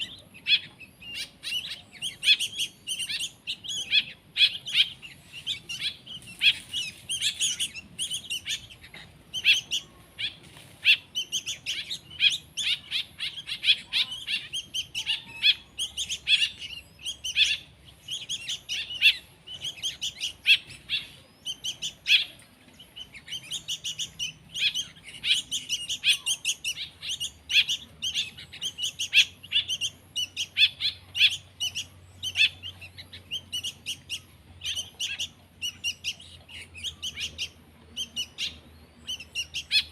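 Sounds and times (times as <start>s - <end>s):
bird chicks chirping: 0.0s - 39.9s.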